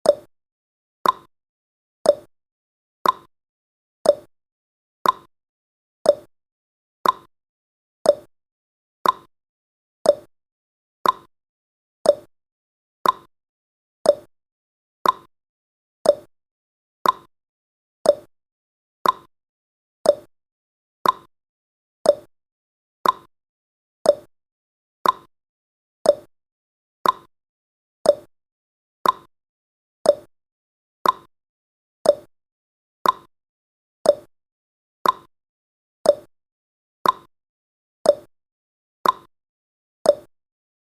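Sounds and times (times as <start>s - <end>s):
clock tick-tock: 0.0s - 0.3s, 1.0s - 1.3s, 2.0s - 2.3s, 3.0s - 3.3s, 4.0s - 4.3s, 5.0s - 5.3s, 6.0s - 6.3s, 7.0s - 7.3s, 8.0s - 8.3s, 9.0s - 9.3s, 10.0s - 10.3s, 11.0s - 11.3s, 12.0s - 12.3s, 13.0s - 13.3s, 14.0s - 14.3s, 15.0s - 15.3s, 16.0s - 16.3s, 17.0s - 17.3s, 18.0s - 18.3s, 19.0s - 19.3s, 20.0s - 20.3s, 21.0s - 21.3s, 22.0s - 22.3s, 23.0s - 23.3s, 24.0s - 24.3s, 25.0s - 25.3s, 26.0s - 26.3s, 27.0s - 27.3s, 28.0s - 28.3s, 29.0s - 29.3s, 30.0s - 30.3s, 31.0s - 31.3s, 32.0s - 32.3s, 33.0s - 33.3s, 34.0s - 34.3s, 35.0s - 35.3s, 36.0s - 36.3s, 37.0s - 37.3s, 38.0s - 38.3s, 39.0s - 39.3s, 40.0s - 40.4s.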